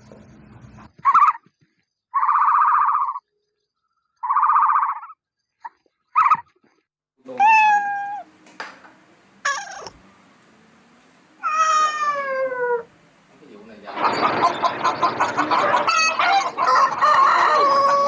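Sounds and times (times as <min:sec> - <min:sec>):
cat meowing: 0:07.3 - 0:08.3, 0:09.4 - 0:10.0, 0:11.4 - 0:12.9.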